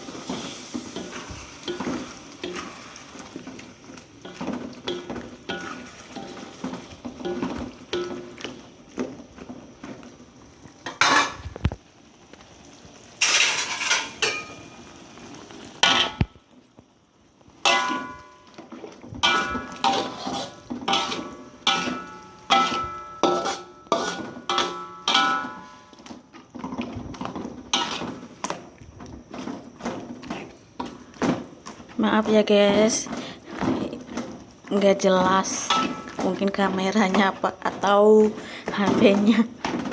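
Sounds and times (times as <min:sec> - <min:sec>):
utensil scraping metal pan: 0:00.0 - 0:08.6, 0:13.2 - 0:14.7, 0:17.6 - 0:18.5, 0:19.2 - 0:28.6, 0:29.3 - 0:39.9.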